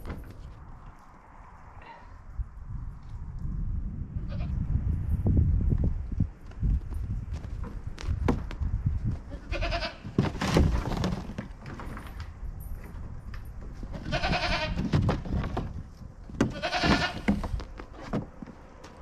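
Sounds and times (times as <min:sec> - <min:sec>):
thumps and knocks: 0:07.5 - 0:08.7, 0:14.8 - 0:18.9
goat bleating: 0:09.3 - 0:10.0, 0:14.0 - 0:14.8, 0:16.5 - 0:17.4.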